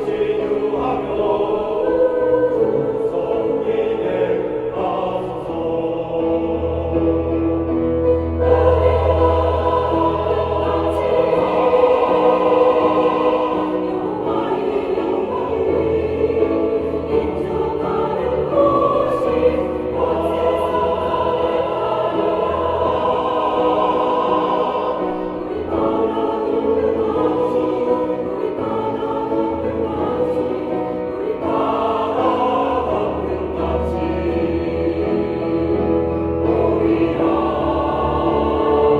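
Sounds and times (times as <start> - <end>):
church choir singing: 0.0 - 38.9.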